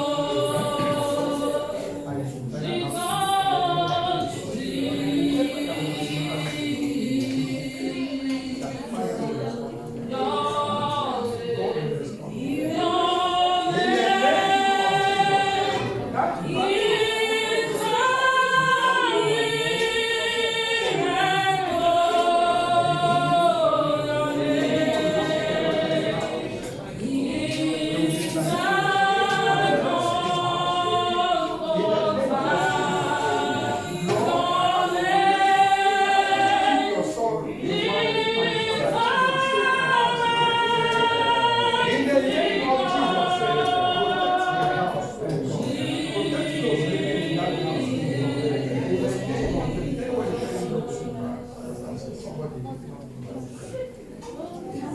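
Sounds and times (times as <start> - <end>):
congregation singing a worship song: 0.0 - 54.9.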